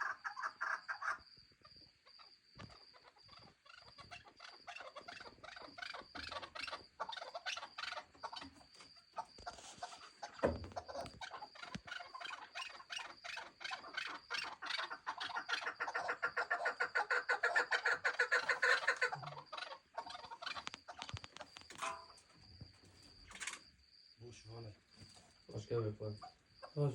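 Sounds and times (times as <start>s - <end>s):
partridges clucking: 2.6s - 22.3s.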